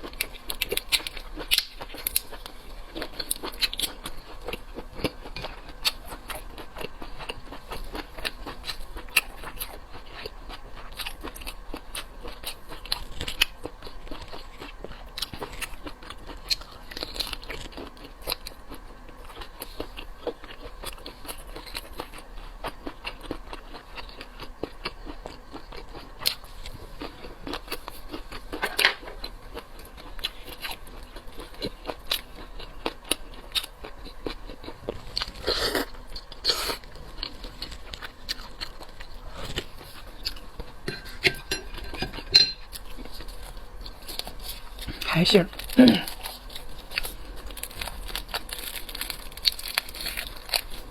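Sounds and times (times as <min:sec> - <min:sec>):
biting and chewing seafood: 0:00.0 - 0:50.9.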